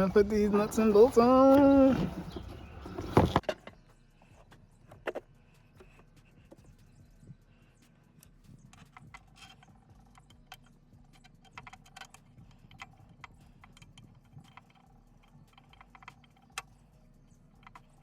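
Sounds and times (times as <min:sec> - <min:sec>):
metallic clicks of nuts and bolts: 0:08.2 - 0:18.0.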